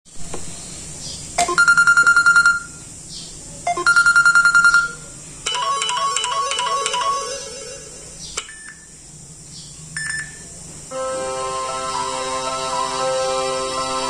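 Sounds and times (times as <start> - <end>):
melodic ringtone: 1.4 - 2.8, 3.7 - 8.7
pulsing beep ringtone: 1.4 - 2.9, 3.7 - 8.9, 10.0 - 10.5.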